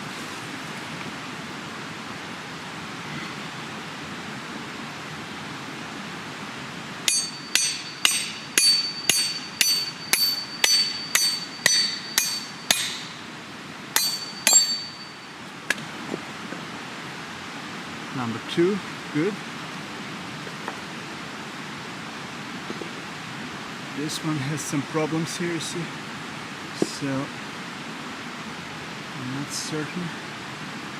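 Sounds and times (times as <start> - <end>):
hammer ringing on steel: 7.1 - 13.3, 14.0 - 15.4.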